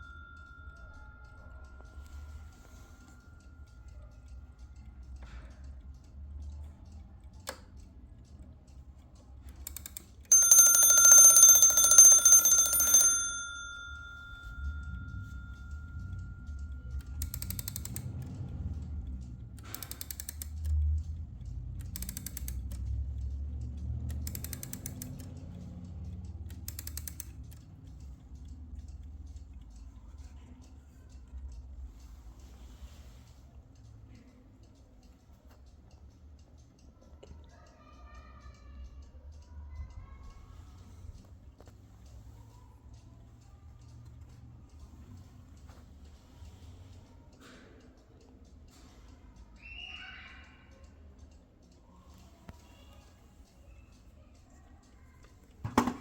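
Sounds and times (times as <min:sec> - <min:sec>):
alarm clock bell ringing: 0:00.0 - 0:04.2, 0:10.3 - 0:17.9
faint clicking: 0:00.0 - 0:11.0, 0:11.8 - 0:55.6.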